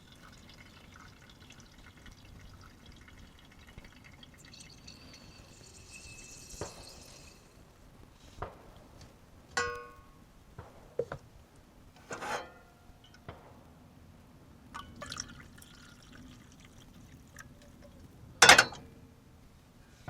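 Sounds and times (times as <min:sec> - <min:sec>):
small objects clinking: 0:04.4 - 0:07.6.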